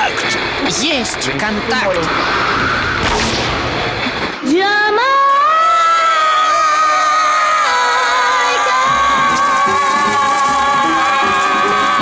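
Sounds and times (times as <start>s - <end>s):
noisy rush: 0.0s - 9.2s
music: 7.6s - 12.0s.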